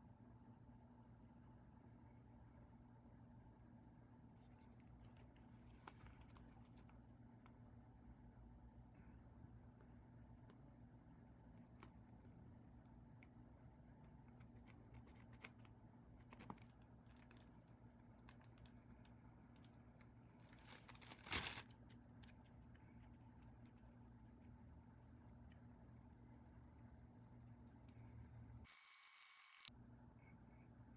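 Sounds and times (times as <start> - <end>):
low electrical hum: 0.0 - 30.9.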